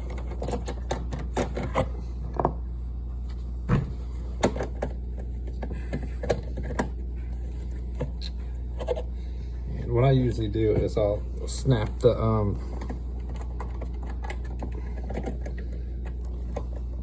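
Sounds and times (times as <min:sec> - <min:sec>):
steady low hum: 0:00.0 - 0:17.0
heavy thump: 0:03.7 - 0:04.0.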